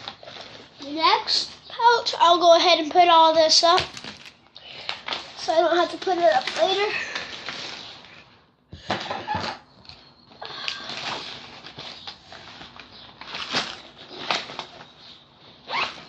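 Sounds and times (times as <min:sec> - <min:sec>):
objects clattering: 0:05.0 - 0:15.0.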